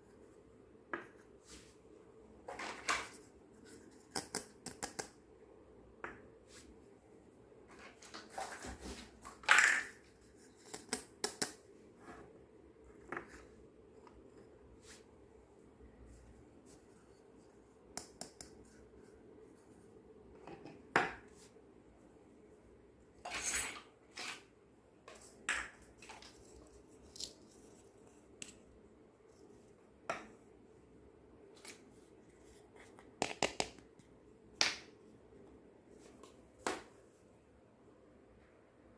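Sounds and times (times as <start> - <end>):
plastic pieces clicking and tapping: 4.1 - 5.2.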